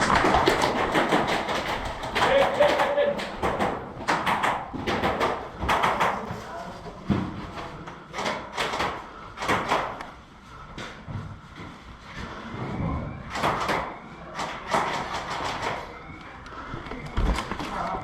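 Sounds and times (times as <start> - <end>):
sharp knocks and clicks: 0.0 - 6.3
faint indistinct voices: 5.2 - 18.0.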